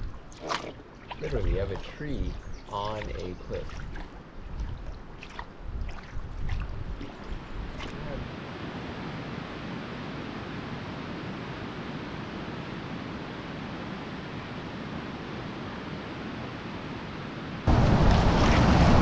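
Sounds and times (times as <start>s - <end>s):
river water rushing: 17.6s - 19.0s
waterfall roar: 17.7s - 19.0s.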